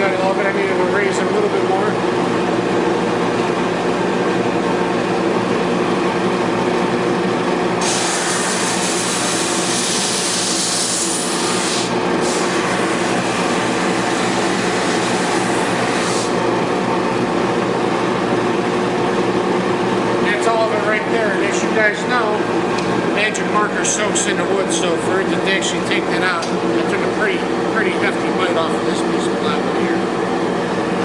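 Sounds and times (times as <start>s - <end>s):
drum sander humming: 0.0s - 31.0s
board being sanded hiss: 7.8s - 12.5s.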